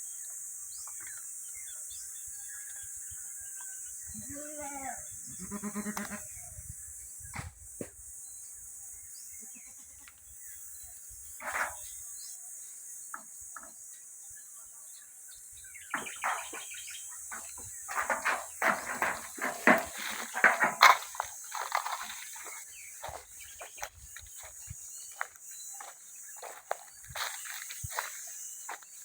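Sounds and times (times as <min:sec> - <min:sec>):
goat calls: 0:04.2 - 0:06.3.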